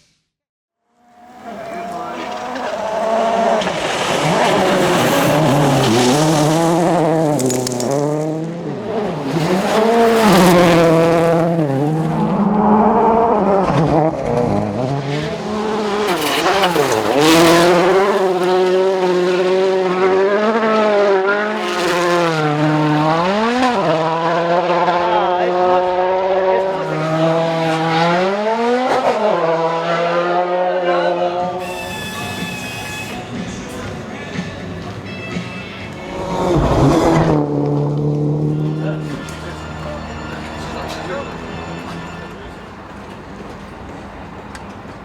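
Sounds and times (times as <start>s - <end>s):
rally car engine revving: 0.8s - 43.2s
tyre and gravel noise: 1.2s - 12.4s, 15.2s - 20.2s.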